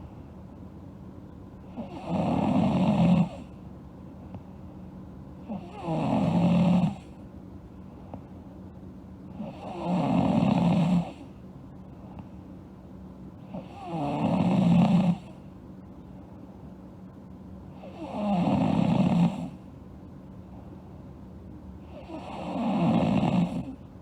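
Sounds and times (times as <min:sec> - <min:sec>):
girl snoring: 0:01.8 - 0:03.5, 0:05.5 - 0:07.1, 0:09.4 - 0:11.2, 0:13.6 - 0:15.3, 0:17.8 - 0:19.6, 0:21.9 - 0:23.8
quiet breathing: 0:09.3 - 0:12.6.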